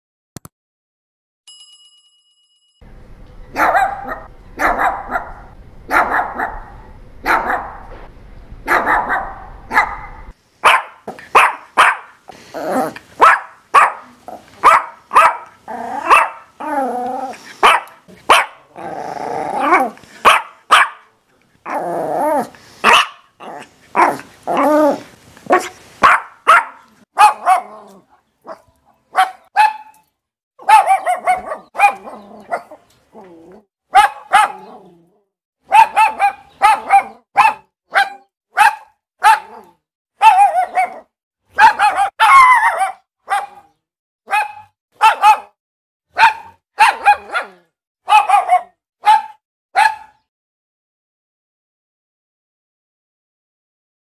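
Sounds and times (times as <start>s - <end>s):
dog barking: 3.5s - 7.9s, 8.6s - 12.2s, 13.2s - 16.5s, 17.6s - 18.7s, 19.7s - 21.1s, 22.8s - 23.3s, 24.0s - 24.7s, 25.5s - 30.0s, 30.6s - 32.8s, 33.9s - 34.8s, 35.6s - 50.3s
dog wavering calls: 41.6s - 43.0s.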